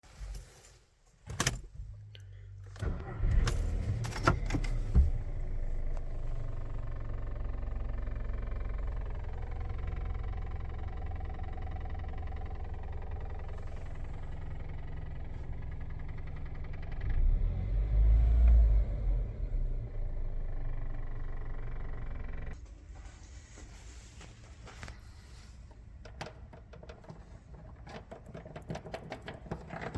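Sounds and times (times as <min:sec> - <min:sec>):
car engine idling: 0:01.3 - 0:17.9, 0:19.3 - 0:22.7.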